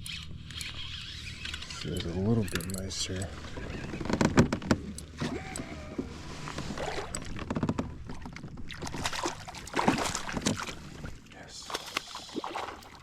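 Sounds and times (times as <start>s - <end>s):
clicks and knocks on kayak: 2.5s - 5.7s, 6.6s - 8.8s, 9.7s - 10.7s
water splashing: 8.1s - 13.0s.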